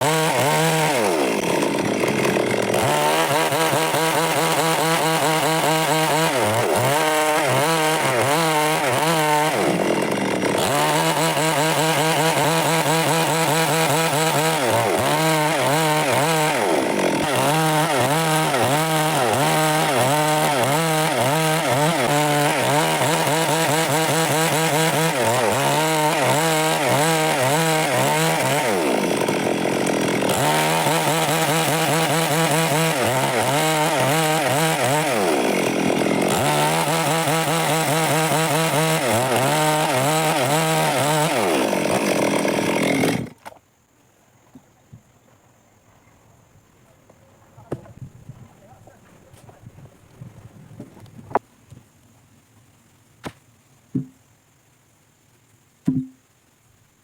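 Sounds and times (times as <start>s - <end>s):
chainsaw cutting wood: 0.0s - 43.6s, 54.0s - 54.2s, 55.8s - 56.2s.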